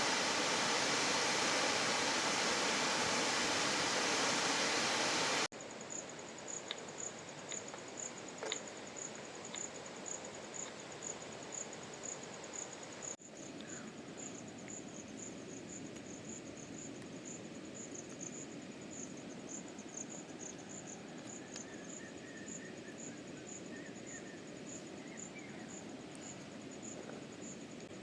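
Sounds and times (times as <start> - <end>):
loud rush of water: 0.0 - 5.5
insects chirping: 0.0 - 28.0
low hiss: 0.0 - 28.0.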